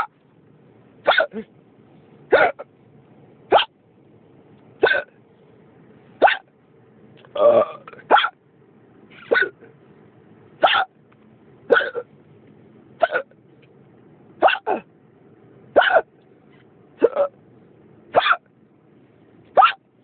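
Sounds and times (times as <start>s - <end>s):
person hiccupping: 7.3s - 8.1s, 11.7s - 12.1s, 17.0s - 17.4s.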